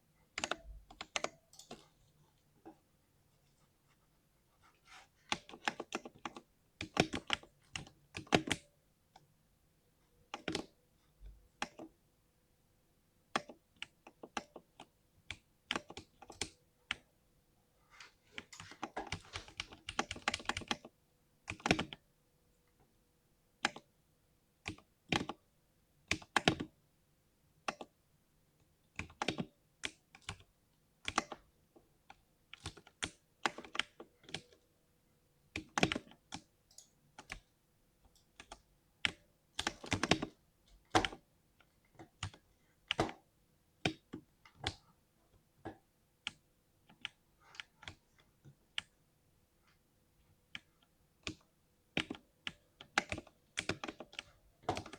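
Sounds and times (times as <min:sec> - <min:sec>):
mechanical keyboard thocky keystrokes: 0:38.4 - 0:41.2, 0:52.8 - 0:54.9.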